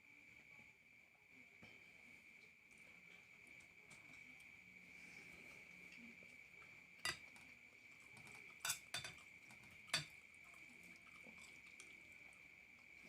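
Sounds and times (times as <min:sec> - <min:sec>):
cutlery clinking on plate: 0:07.0 - 0:07.3, 0:08.2 - 0:10.2.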